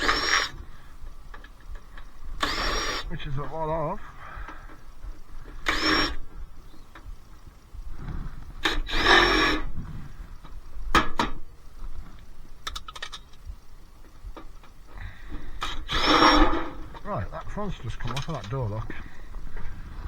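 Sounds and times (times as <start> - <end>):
power driver spinning: 0.0 - 7.1, 8.6 - 9.7, 14.6 - 20.0
clicks and taps of screws: 12.6 - 14.8.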